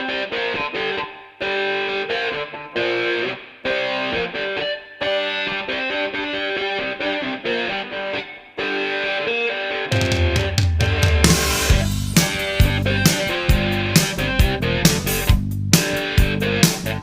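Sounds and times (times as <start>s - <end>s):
distorted electric guitar riff: 0.0s - 17.0s.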